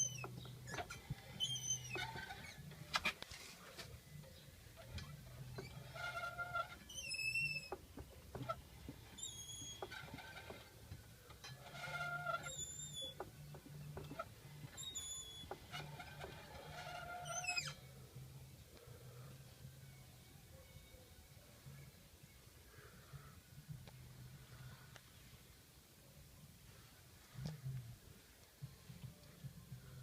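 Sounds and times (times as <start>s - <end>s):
driveshaft squealing: 0.0s - 2.8s, 4.8s - 17.9s
low scraping from wheel: 4.8s - 13.2s, 13.9s - 17.8s.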